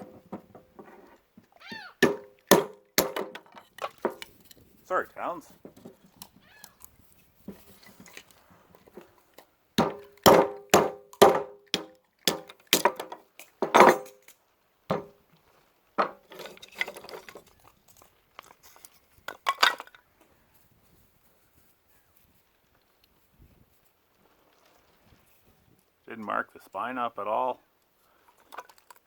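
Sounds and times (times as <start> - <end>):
metal clamp hammering knife: 2.0 - 3.5, 9.8 - 14.2
knocks: 2.0 - 4.2, 9.8 - 14.2, 14.9 - 15.1.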